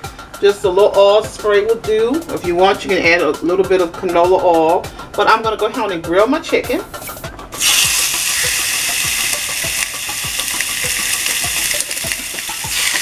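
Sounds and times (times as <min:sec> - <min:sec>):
chicken sizzling on a grill: 0:07.6 - 0:13.0.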